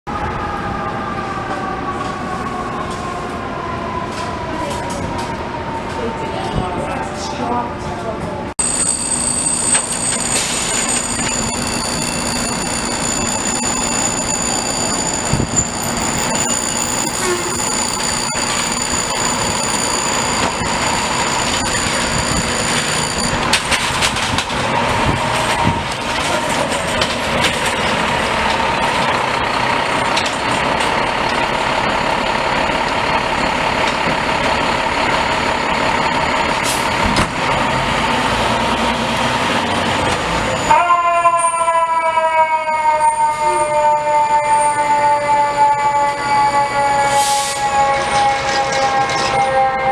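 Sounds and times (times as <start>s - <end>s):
steady high-pitched tone: 8.6s - 23.5s
diesel engine running: 8.6s - 40.6s.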